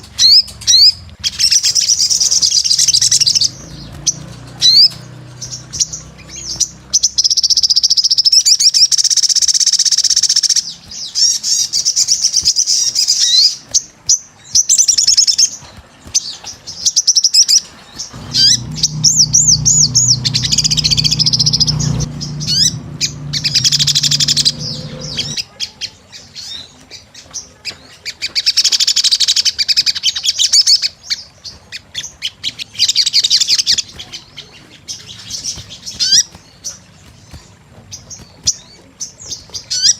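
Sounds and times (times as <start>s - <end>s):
bird trilling and warbling: 0.0s - 26.6s, 28.1s - 39.9s
low steady hum: 18.0s - 25.4s.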